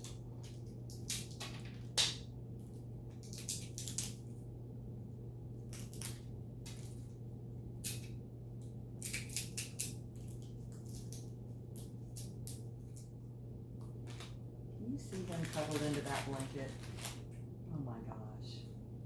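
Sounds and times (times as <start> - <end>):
steady low hum: 0.0 - 19.0
packaging crinkling: 13.8 - 14.4, 15.0 - 17.4.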